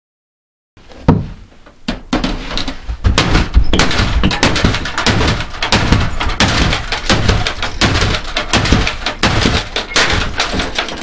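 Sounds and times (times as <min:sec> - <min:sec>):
loud banging and clattering: 0:01.1 - 0:11.0
sharp knock: 0:03.0 - 0:11.0.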